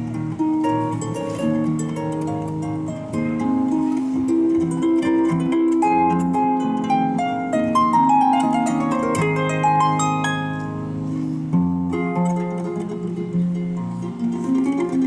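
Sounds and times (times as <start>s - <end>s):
solo harp waltz: 0.0s - 15.0s.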